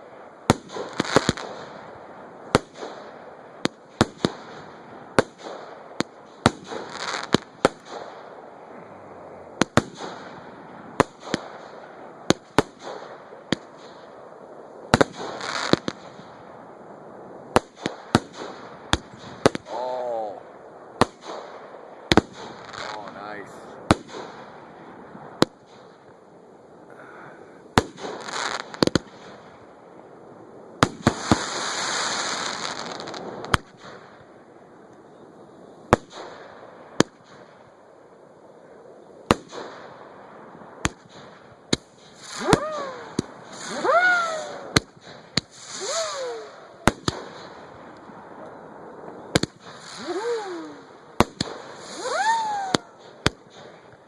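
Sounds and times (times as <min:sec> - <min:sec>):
hissing crackling firework burst: 0:00.0 - 0:34.2, 0:38.6 - 0:54.0
falling firework whistles: 0:27.8 - 0:29.2, 0:30.8 - 0:33.7, 0:41.8 - 0:47.7, 0:49.2 - 0:53.8
firework shells bursting: 0:40.8 - 0:48.2, 0:49.3 - 0:54.0.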